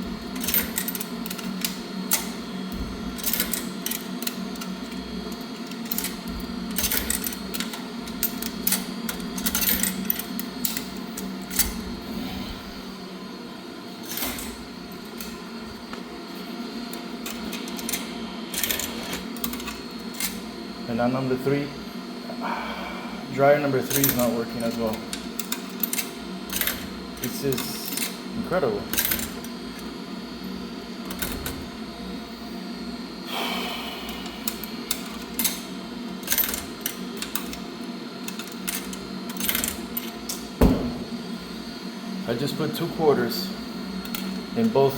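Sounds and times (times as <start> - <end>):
laundry machinery humming: 0.0 - 44.9
coin rattling through mechanism: 0.4 - 2.3, 3.2 - 11.8, 14.0 - 15.4, 17.2 - 20.4, 23.8 - 28.2, 28.9 - 29.8, 34.4 - 35.6, 36.2 - 37.6, 38.2 - 40.4.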